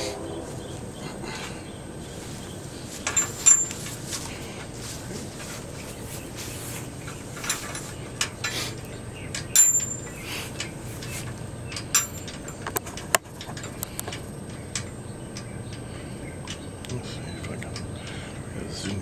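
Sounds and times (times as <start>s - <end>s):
light metallic clinks: 3.0s - 4.3s, 7.0s - 12.8s.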